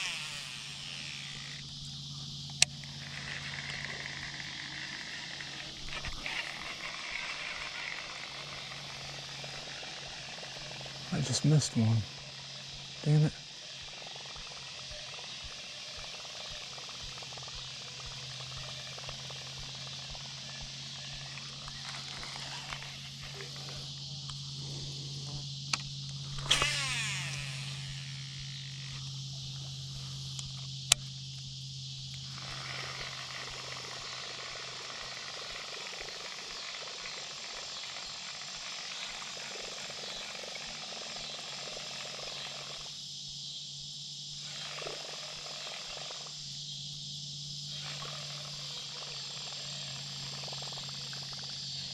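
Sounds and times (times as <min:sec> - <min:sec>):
insects buzzing: 0:00.0 - 0:51.9
sharp click: 0:25.7 - 0:27.4.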